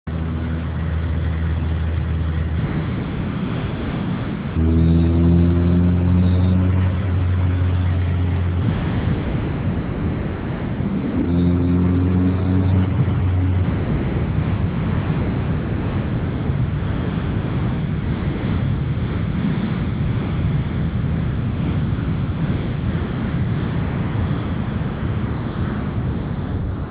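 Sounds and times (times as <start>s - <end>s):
car engine rushing noise: 0.1s - 26.9s
low-pitched hum with overtones: 0.1s - 26.9s.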